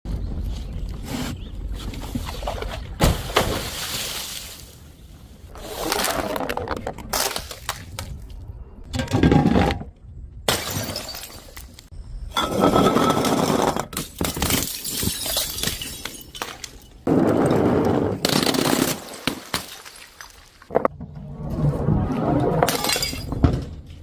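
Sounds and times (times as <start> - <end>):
glass bottles shattering: 10.5 - 11.7, 12.4 - 17.0, 22.7 - 23.6.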